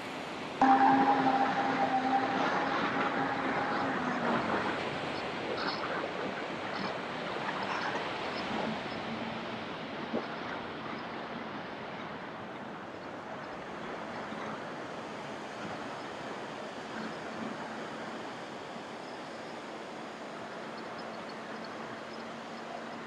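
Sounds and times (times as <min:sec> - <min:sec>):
surf rushing: 0:00.0 - 0:10.0
faint steady hum: 0:00.0 - 0:12.2
wind: 0:00.0 - 0:23.0.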